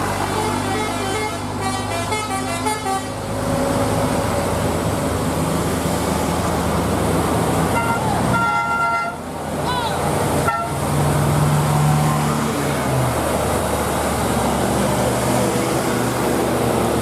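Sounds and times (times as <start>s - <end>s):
vehicle horn notes: 7.8s - 9.2s, 10.4s - 10.8s.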